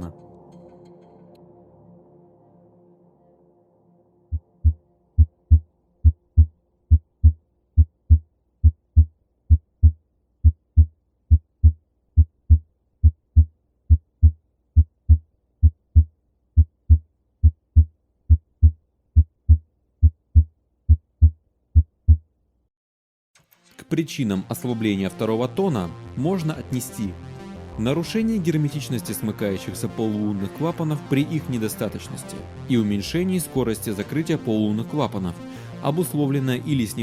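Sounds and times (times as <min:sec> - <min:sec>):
heartbeat through stethoscope: 0:04.3 - 0:22.2.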